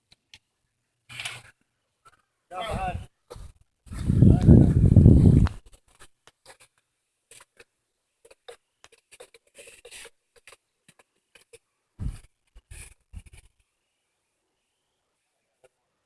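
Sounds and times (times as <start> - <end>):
rustles and clicks of gear: 1.1 - 2.2
heavy bumps: 12.0 - 12.2.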